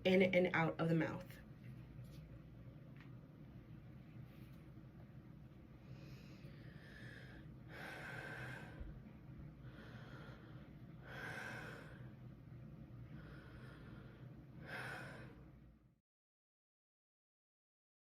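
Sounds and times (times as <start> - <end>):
person breathing deeply: 5.8 - 12.3, 13.0 - 15.6.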